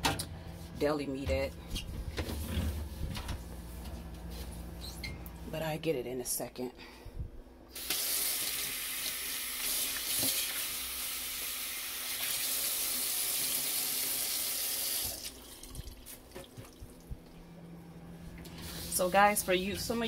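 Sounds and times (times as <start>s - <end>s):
faucet water running into sink: 7.8s - 16.1s.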